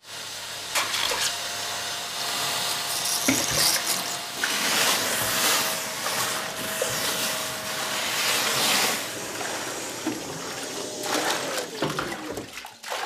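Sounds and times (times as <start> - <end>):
vacuum sucking water: 0.8 - 13.0
water splashes and drips: 9.3 - 13.0.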